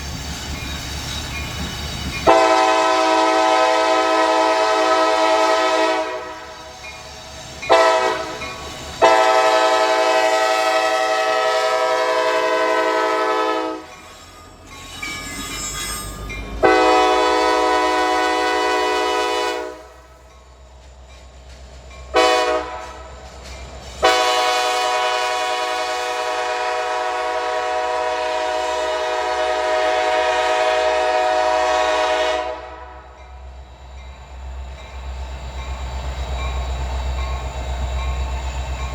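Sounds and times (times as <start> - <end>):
locomotive rumbling: 0.0 - 38.9
locomotive air horn chord: 2.3 - 6.6, 7.7 - 8.4, 9.0 - 13.9, 16.6 - 20.1, 22.1 - 23.0, 24.0 - 33.2.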